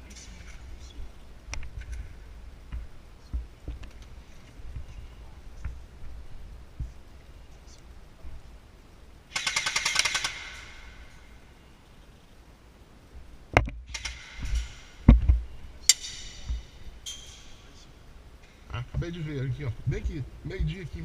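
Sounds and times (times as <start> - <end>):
airsoft rifle full-auto burst: 9.3 - 10.5
low thumps: 18.7 - 21.0.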